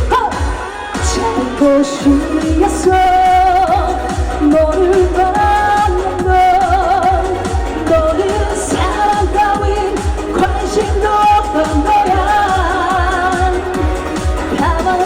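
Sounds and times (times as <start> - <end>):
backing track with kick drum: 0.0 - 15.0
person singing with vibrato: 0.0 - 15.0.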